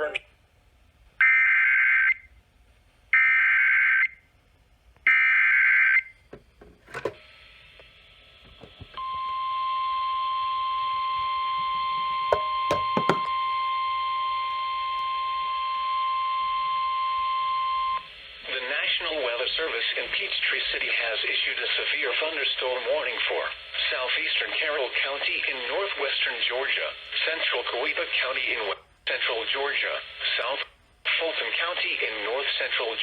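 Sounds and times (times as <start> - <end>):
steady warning alarm tone: 8.8 - 18.1
radio static hiss: 18.1 - 33.0.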